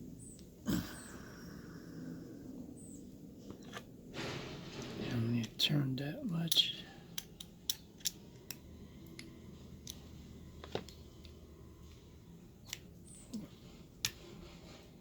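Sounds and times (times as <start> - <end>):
padlock and picks clicking: 6.5 - 10.0.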